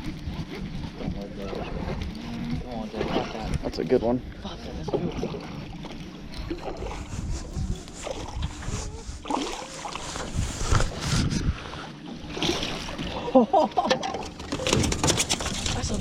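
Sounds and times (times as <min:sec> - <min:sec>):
knocks and thumps in boat: 0:00.0 - 0:03.9, 0:12.1 - 0:16.0
wind on microphone: 0:06.3 - 0:11.9, 0:14.6 - 0:16.0.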